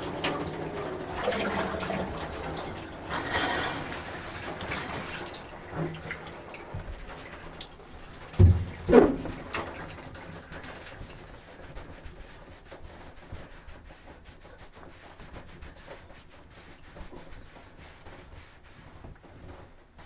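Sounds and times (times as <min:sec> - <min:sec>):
person rubbing and shuffling: 0:11.2 - 0:20.0.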